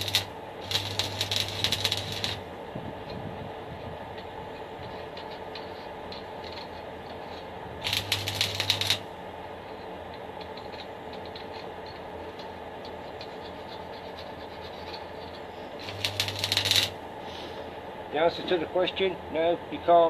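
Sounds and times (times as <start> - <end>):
welding arc crackling: 0.0 - 2.6, 4.8 - 9.2, 15.8 - 17.0
welder hum: 0.0 - 17.8.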